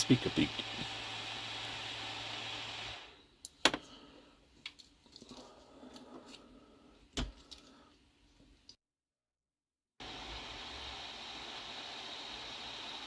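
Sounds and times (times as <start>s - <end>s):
computer fans humming: 0.0s - 3.2s.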